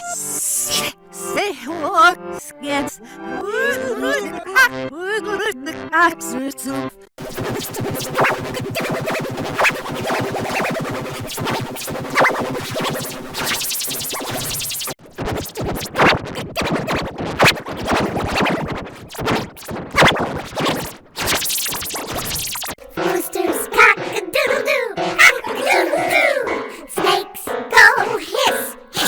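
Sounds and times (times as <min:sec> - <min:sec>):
stuttering processed music: 0:07.2 - 0:29.0.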